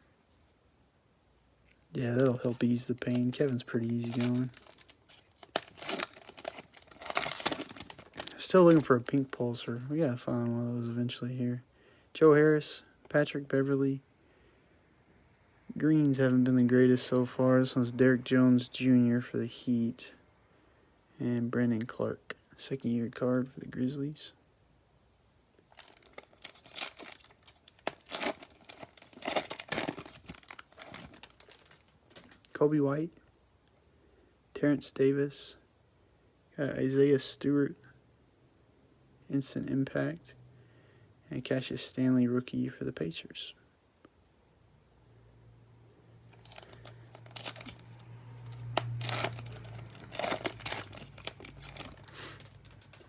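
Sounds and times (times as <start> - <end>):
plastic wrapper tearing and crinkling: 2.0 - 9.3, 25.6 - 32.5, 46.3 - 53.0.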